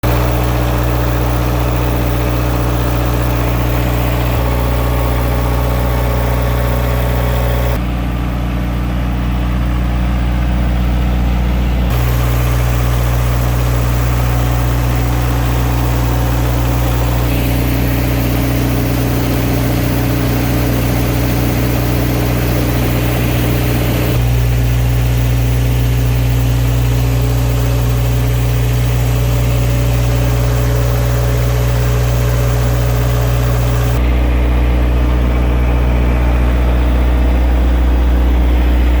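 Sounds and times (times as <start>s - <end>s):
diesel generator humming: 0.0s - 39.0s.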